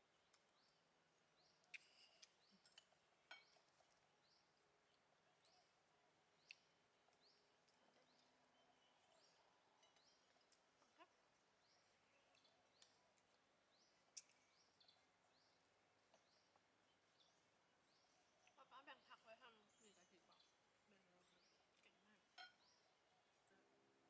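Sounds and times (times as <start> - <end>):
bird chirps: 6.4 - 11.0, 11.6 - 23.5
soft clinks: 22.3 - 22.7.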